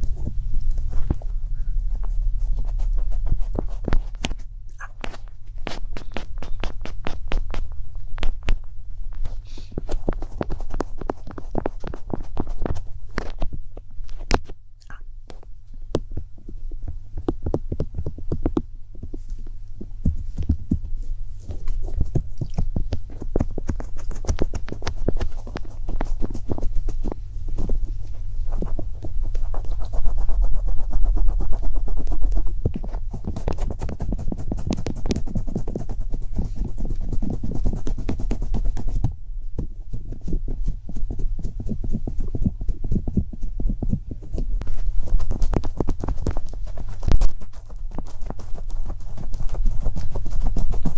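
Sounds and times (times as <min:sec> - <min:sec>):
steady low hum: 0:00.0 - 0:50.9
rapid tapping and clicking: 0:09.8 - 0:13.4, 0:21.9 - 0:27.7, 0:28.6 - 0:50.9.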